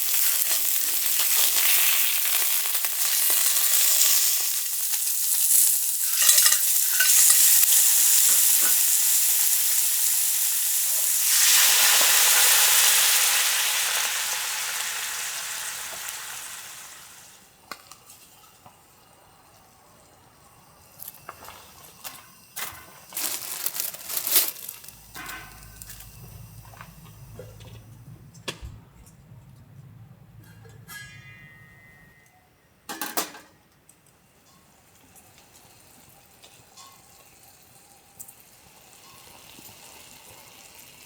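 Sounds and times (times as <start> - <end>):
food sizzling in a pan: 0.0 - 27.8, 34.4 - 41.0
low hum: 23.9 - 32.8
cookware clicking and knocking: 32.9 - 33.6.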